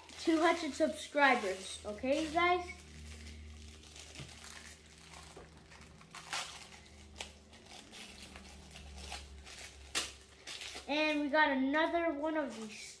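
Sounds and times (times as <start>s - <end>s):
plastic packaging crinkling: 0.0s - 11.2s, 12.2s - 13.0s.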